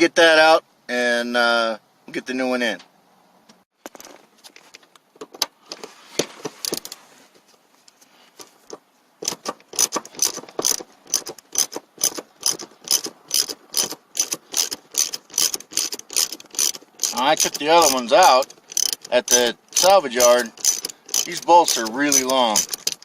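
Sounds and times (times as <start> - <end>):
faint scraping and tool handling: 5.6 - 23.0
ratchet wrench clicking: 9.2 - 23.0.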